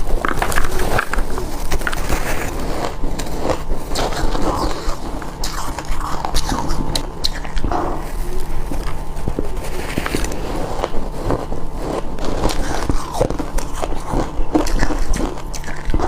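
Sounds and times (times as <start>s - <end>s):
ice crunching being bitten: 9.8s - 16.0s.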